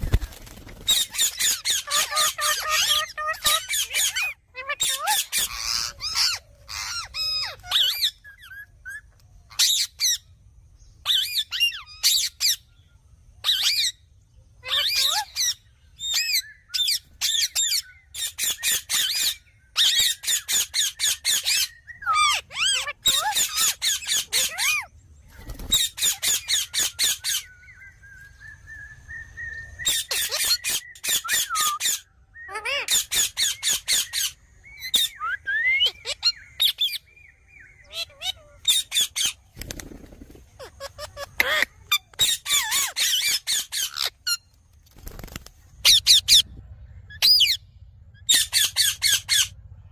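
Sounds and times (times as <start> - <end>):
parakeet screeching: 0.8 - 10.2, 14.6 - 24.9, 25.6 - 27.5, 29.8 - 37.0, 37.9 - 39.4, 40.6 - 44.4, 45.8 - 46.4, 48.2 - 49.5
parakeet whistle: 26.0 - 37.0.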